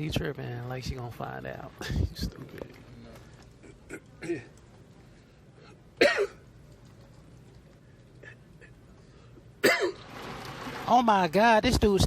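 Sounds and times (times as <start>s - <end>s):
man coughing: 3.6s - 4.5s, 6.0s - 6.4s, 9.6s - 10.0s.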